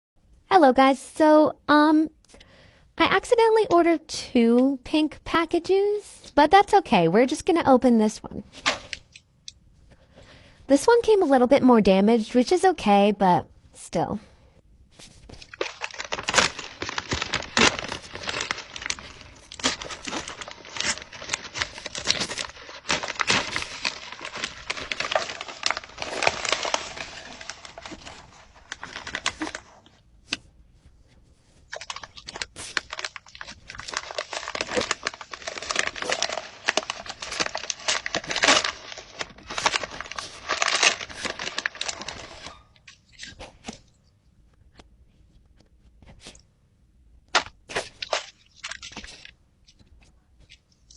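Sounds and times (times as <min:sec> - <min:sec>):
package tearing and crinkling: 0:15.4 - 0:29.8, 0:31.7 - 0:42.6.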